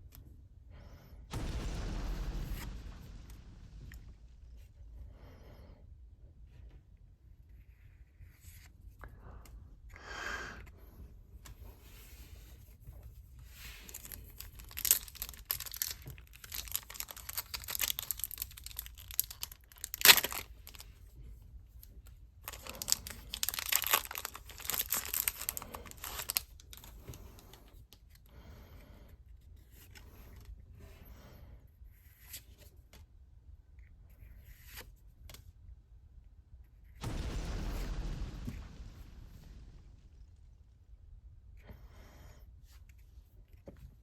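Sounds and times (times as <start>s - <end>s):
sharp snap: 1.3s - 5.0s
card packaging tearing and crinkling: 13.9s - 20.8s, 22.5s - 26.5s.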